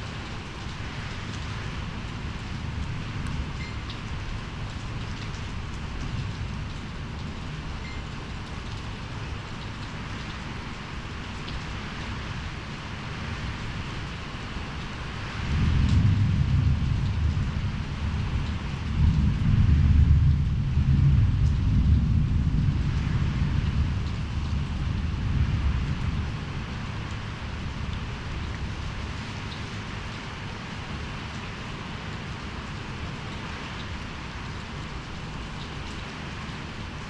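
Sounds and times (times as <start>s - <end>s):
heavy rain falling: 0.0s - 37.0s
deep low rumble: 15.4s - 28.6s.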